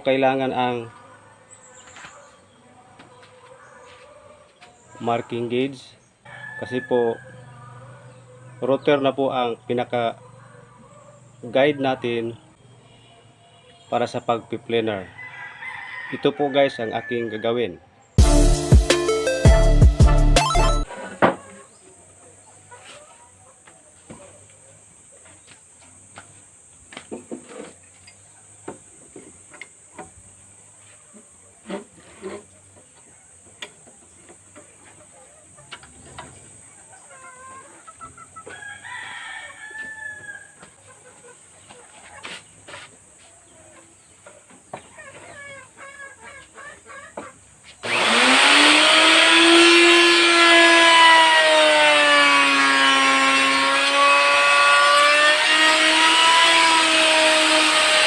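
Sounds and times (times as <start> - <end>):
rooster crowing: 6.2 - 8.9, 14.9 - 17.8, 38.4 - 40.8
hens clucking: 22.5 - 24.5, 33.9 - 47.8
router motor whining: 47.8 - 58.0.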